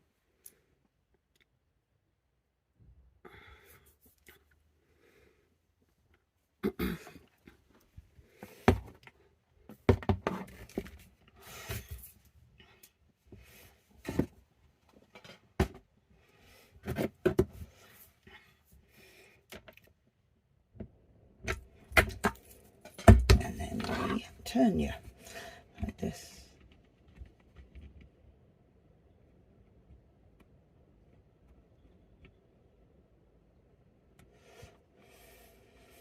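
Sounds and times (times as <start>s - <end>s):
knocks and clicks of containers: 21.5s - 23.8s.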